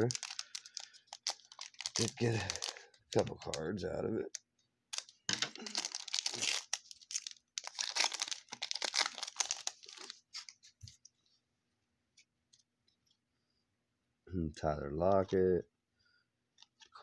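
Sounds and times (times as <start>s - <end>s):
wrapper tearing and crinkling: 0.0s - 3.6s, 4.9s - 10.6s.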